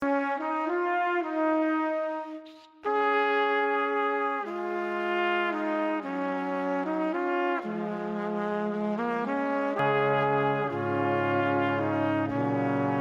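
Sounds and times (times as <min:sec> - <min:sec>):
brass-like held chords: 0:02.9 - 0:13.0.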